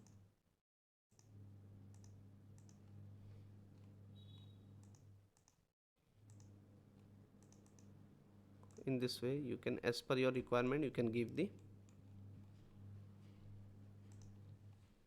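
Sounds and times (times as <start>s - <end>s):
low electrical hum: 1.2s - 5.4s, 6.0s - 15.0s
computer mouse clicks: 1.9s - 3.0s, 3.8s - 5.6s, 6.3s - 7.9s, 8.6s - 8.8s, 14.1s - 14.5s.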